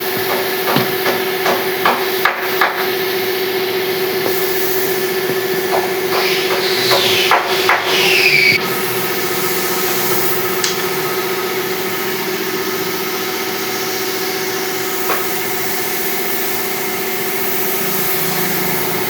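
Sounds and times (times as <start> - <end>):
machine hum: 0.0 - 19.0
hammer striking wood: 0.1 - 3.0, 5.2 - 8.2
high falling squeals: 5.9 - 9.5.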